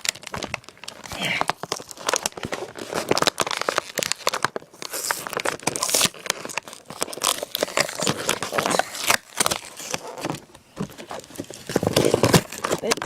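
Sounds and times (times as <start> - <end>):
packaging crinkling and tearing: 0.0 - 13.0.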